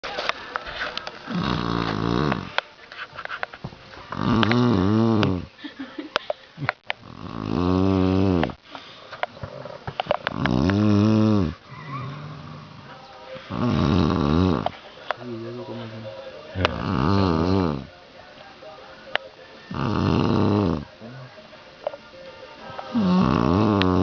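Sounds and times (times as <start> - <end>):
quiet breathing: 0.3 - 24.0
man snoring heavily: 1.3 - 2.5, 4.1 - 5.5, 7.0 - 8.6, 10.3 - 12.9, 13.5 - 14.7, 16.6 - 17.9, 19.7 - 20.9, 22.9 - 24.0.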